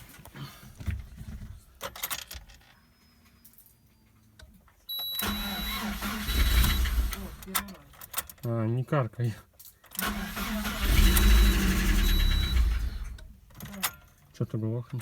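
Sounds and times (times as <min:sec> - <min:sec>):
car engine cranking whine: 0:05.2 - 0:07.6, 0:10.0 - 0:13.4.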